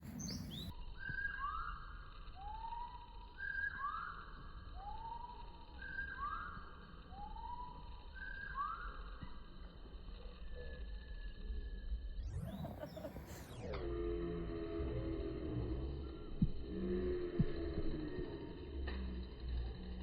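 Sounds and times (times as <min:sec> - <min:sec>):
bird whistling three notes: 0:00.2 - 0:09.2.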